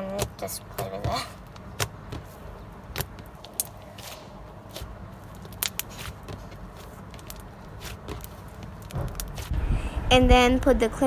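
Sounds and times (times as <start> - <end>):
slime clicking and popping: 0.0 - 9.5.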